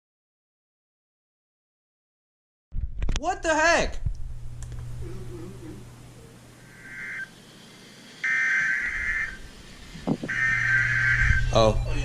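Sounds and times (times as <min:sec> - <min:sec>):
steady low hum: 0:02.8 - 0:12.0
buzzy digital data tones: 0:06.1 - 0:12.0.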